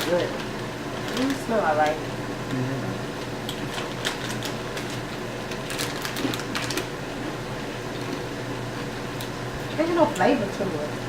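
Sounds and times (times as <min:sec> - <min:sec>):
chewing crunchy chips: 0:03.5 - 0:07.0.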